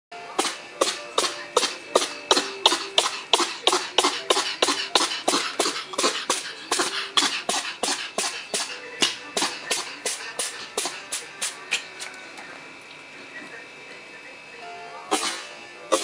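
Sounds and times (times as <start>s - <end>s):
cat sneezing: 0.4s - 8.8s, 15.1s - 16.0s.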